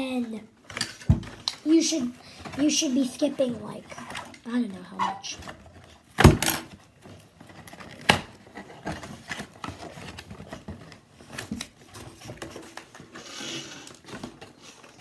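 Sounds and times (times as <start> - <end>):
packaging rustle: 5.3 - 15.0.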